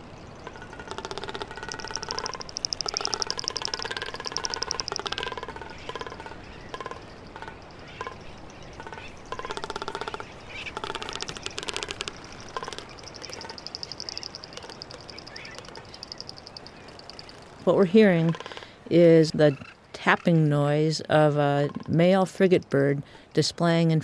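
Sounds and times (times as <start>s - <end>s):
bird tapping drumming: 0.4s - 18.7s.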